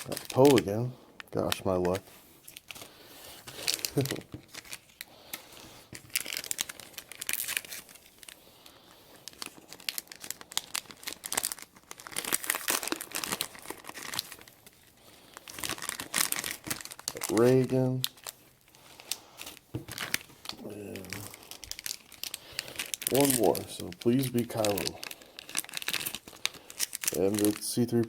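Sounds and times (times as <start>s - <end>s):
plastic wrapper tearing and crinkling: 0.0s - 28.0s.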